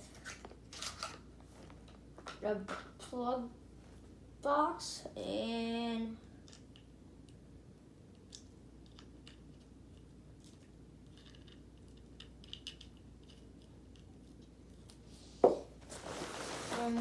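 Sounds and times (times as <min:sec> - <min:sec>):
nylon rustling: 0:15.4 - 0:17.0.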